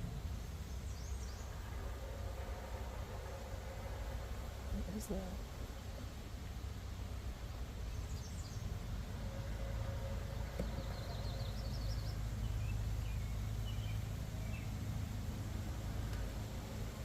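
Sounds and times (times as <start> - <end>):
low outdoor rumble: 0.0 - 17.0
small birds chirping: 10.6 - 14.8.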